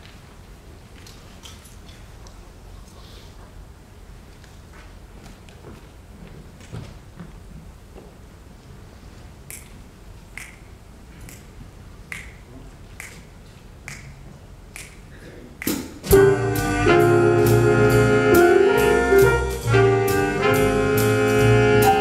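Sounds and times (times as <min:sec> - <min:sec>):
finger snaps: 0:09.4 - 0:11.5, 0:12.1 - 0:16.0
jazz big band playing: 0:16.0 - 0:22.0.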